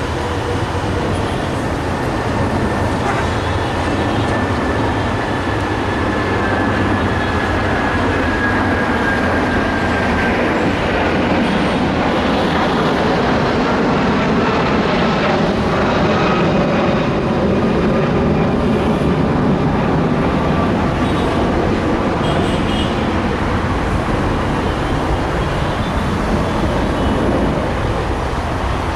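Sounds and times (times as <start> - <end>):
diesel train rumbling and rattling: 0.0 - 14.2.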